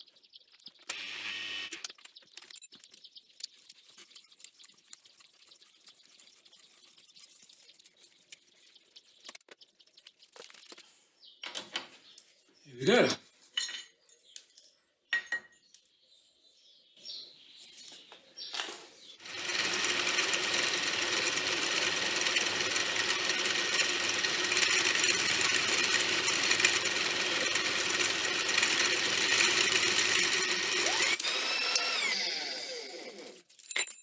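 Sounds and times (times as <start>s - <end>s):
machine tool cutting metal: 19.2s - 33.4s.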